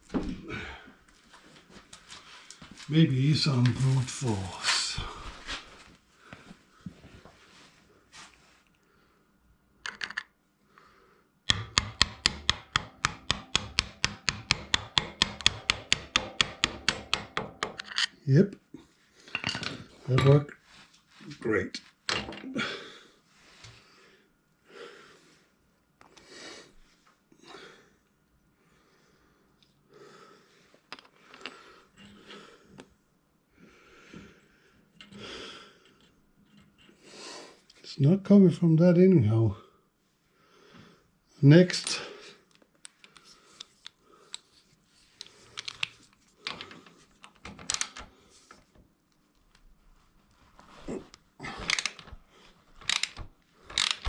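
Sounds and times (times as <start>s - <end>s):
metal tools clicking and clinking: 17.7s - 18.2s, 19.3s - 20.4s, 45.2s - 48.1s, 51.6s - 52.2s, 52.8s - 54.0s
metal parts clattering: 45.5s - 48.1s, 51.6s - 52.2s, 52.8s - 54.0s.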